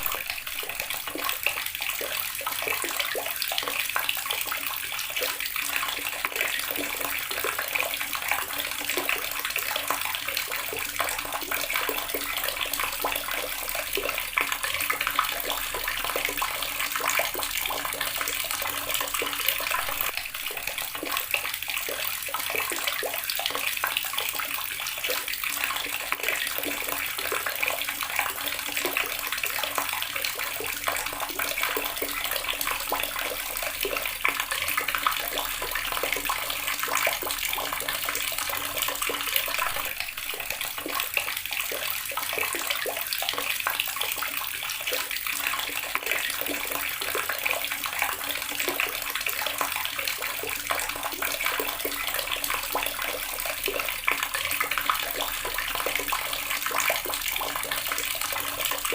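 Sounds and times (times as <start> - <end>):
tap water splashing: 0.0 - 58.9.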